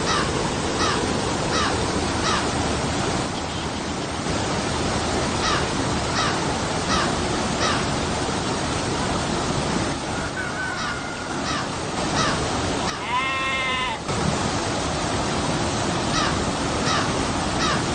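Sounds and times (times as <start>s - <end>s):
water rushing over rocks: 0.0s - 17.9s
crow cawing: 0.1s - 2.4s, 5.4s - 5.6s, 6.2s - 7.8s, 10.6s - 14.0s, 16.1s - 17.9s.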